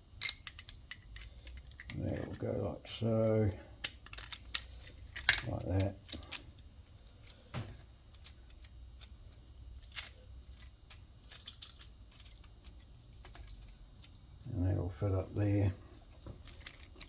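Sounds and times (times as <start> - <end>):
low background hum: 0.0 - 17.0
small metal parts clicking: 0.2 - 2.4, 3.8 - 7.5, 8.1 - 14.5, 16.4 - 17.0.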